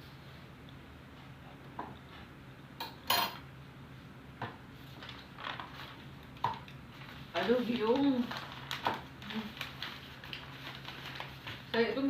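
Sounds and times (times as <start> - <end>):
cutlery clinking against a plate: 2.8 - 3.4.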